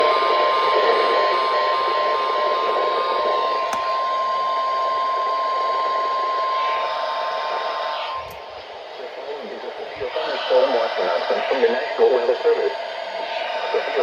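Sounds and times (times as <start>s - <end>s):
steady warning beep: 0.0s - 3.6s.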